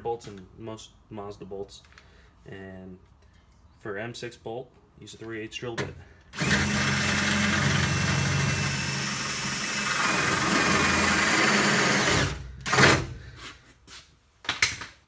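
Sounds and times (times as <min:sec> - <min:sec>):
electric drill through sheet metal: 0:06.4 - 0:13.1.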